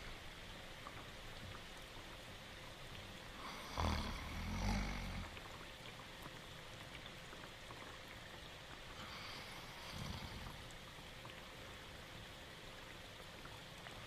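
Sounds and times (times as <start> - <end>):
steady rain: 0.0 - 14.0
rasping cartoon snore: 3.6 - 5.2.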